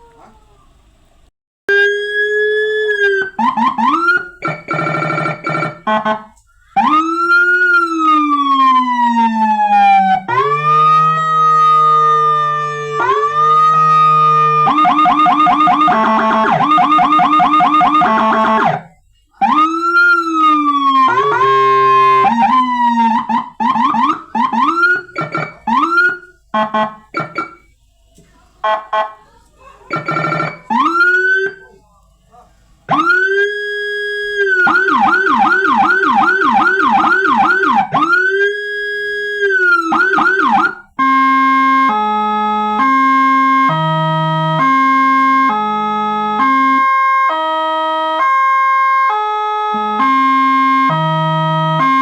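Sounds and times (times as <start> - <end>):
electronic vehicle siren: 1.7 - 27.7, 29.9 - 31.7, 32.9 - 52.0.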